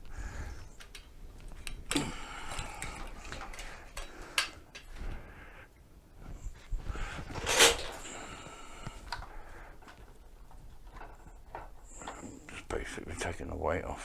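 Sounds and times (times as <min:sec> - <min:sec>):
light clicks and knocks of hand work: 0:00.0 - 0:05.2.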